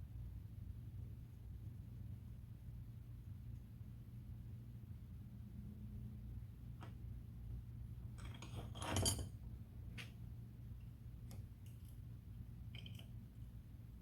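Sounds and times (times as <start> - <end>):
metal parts clinking on workbench: 8.2 - 9.4.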